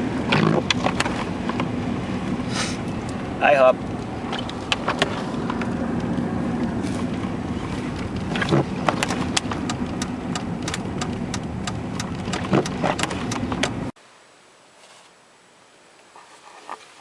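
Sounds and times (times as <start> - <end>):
vehicle engine and road noise: 0.0 - 17.0
sharp clicks and knocks: 3.8 - 6.3, 7.9 - 13.9.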